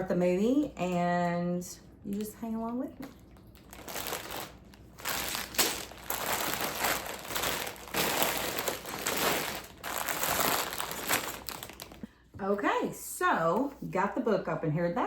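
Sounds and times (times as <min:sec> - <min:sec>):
plastic bags crinkling: 0:03.1 - 0:12.1.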